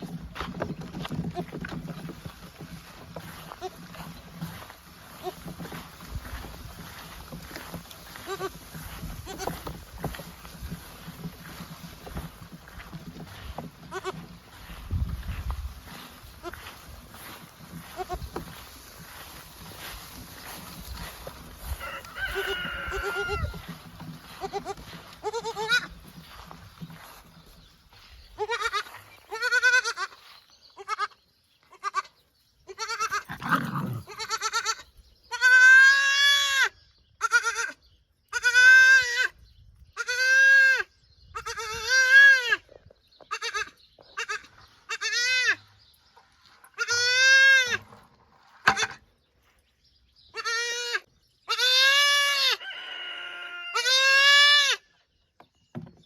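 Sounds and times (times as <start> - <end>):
goat kid bleating: 5.1 - 5.7, 8.1 - 9.6, 13.8 - 14.3, 16.3 - 16.8, 17.8 - 18.4, 21.9 - 25.9, 28.4 - 30.2, 30.8 - 32.1, 32.7 - 39.3, 40.0 - 42.6, 43.3 - 45.6, 46.8 - 47.8, 50.3 - 54.8.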